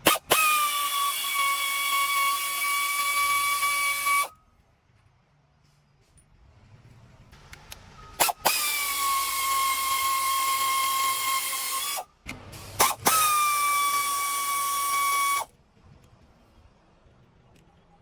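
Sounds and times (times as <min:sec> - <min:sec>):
power tool whining: 0:00.0 - 0:04.4, 0:08.2 - 0:12.1, 0:12.8 - 0:15.5.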